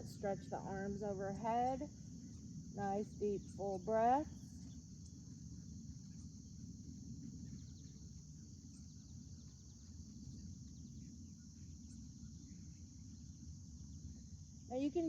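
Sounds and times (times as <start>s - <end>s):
high-pitched insect chorus: 0.0s - 15.0s
low background rumble: 0.0s - 15.0s
faint bird chirps: 7.3s - 15.0s.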